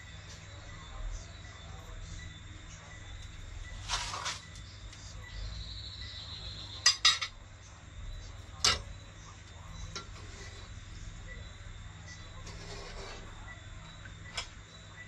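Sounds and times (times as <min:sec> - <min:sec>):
cutlery clinking on dishes: 0:06.8 - 0:07.4
cutlery scraping dish: 0:12.4 - 0:13.3.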